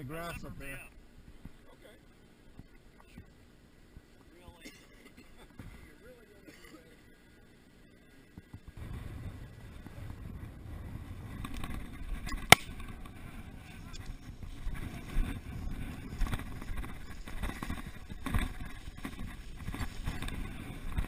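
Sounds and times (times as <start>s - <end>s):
wind rumbling on microphone: 8.4s - 21.0s
sharp crack: 11.4s - 13.1s.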